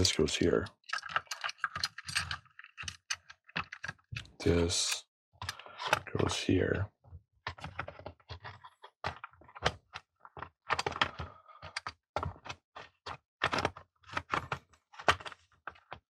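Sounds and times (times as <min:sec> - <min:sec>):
plastic parts clicking: 0:00.0 - 0:06.2.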